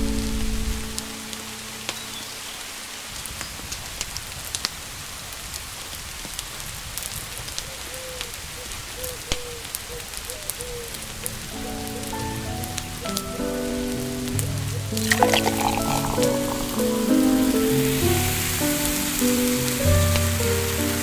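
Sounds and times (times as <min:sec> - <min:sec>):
steady rain falling: 0:00.0 - 0:10.3, 0:16.9 - 0:21.0
sharp drips and ticks: 0:15.1 - 0:17.1.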